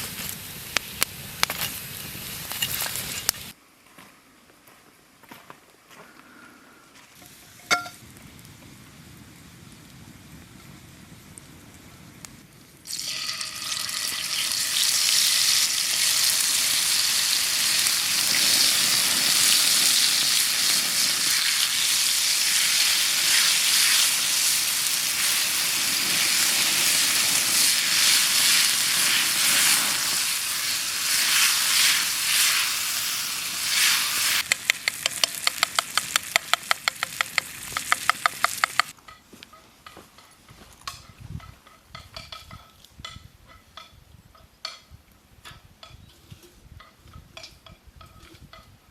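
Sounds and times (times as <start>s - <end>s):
food sizzling in a pan: 12.9s - 38.9s
utensil clicking in a pan: 34.4s - 39.0s.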